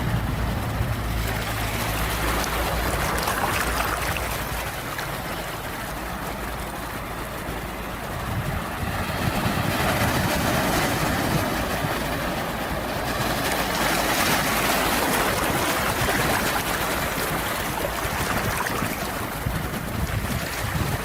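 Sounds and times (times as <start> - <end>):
sea waves washing ashore: 0.0 - 21.0.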